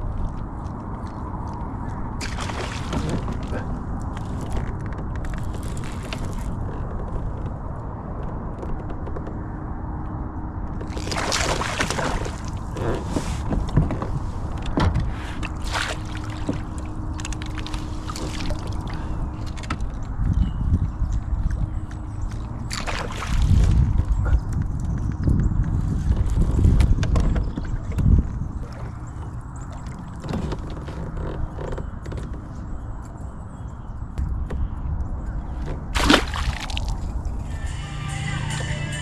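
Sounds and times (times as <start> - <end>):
water splashing around kayak: 0.0 - 7.3, 10.7 - 20.2, 22.2 - 24.9, 25.7 - 31.5, 35.5 - 37.6.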